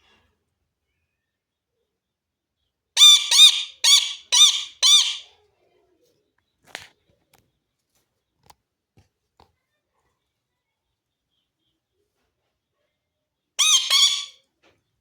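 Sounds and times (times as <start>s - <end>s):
parrot squawking: 3.0s - 5.3s, 13.6s - 14.4s.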